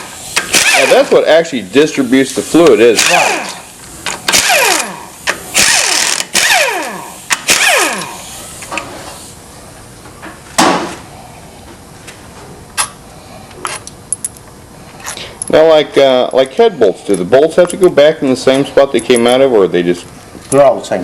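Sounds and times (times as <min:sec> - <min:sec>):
power driver spinning bolts: 0:00.4 - 0:01.1, 0:02.9 - 0:08.2.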